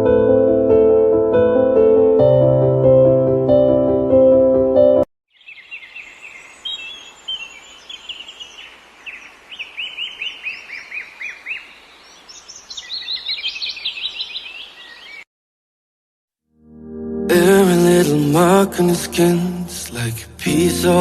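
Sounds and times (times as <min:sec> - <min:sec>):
songbirds singing and chirping: 0:05.3 - 0:15.3
faint outdoor hiss: 0:05.4 - 0:15.2.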